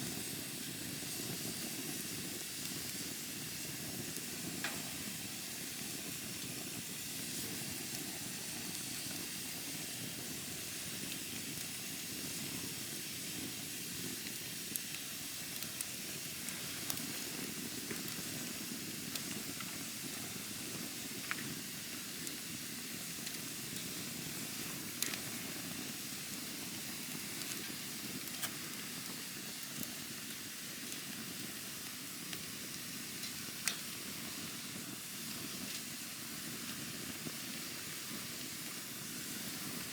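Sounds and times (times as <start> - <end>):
campfire hissing: 0.0 - 39.9
wood crackling and popping: 14.2 - 22.4, 23.2 - 38.8.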